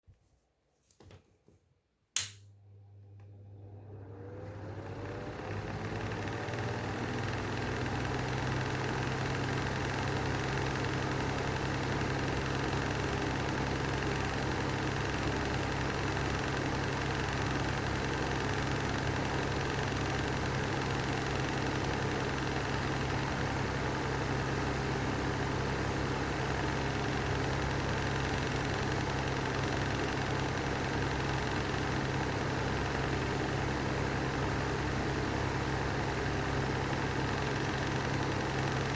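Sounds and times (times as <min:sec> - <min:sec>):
fan switch click: 0:02.2 - 0:02.4
exhaust fan motor humming: 0:03.9 - 0:38.9.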